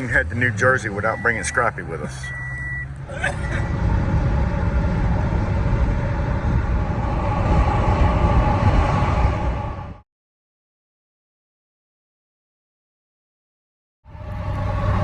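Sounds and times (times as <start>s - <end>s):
heavy vehicle rumbling: 0.0s - 10.0s, 14.1s - 15.0s
faint steady whine: 14.1s - 15.0s.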